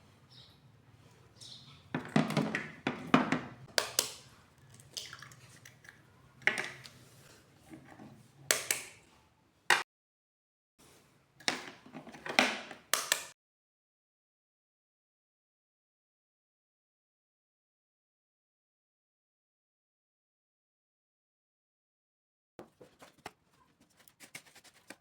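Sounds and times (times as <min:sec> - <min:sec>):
crackling squishing food handling: 0:03.6 - 0:07.5, 0:22.6 - 0:25.0.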